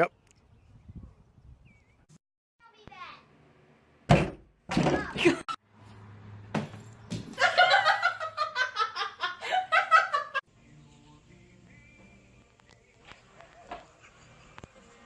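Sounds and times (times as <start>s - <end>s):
person laughing: 7.4s - 10.4s.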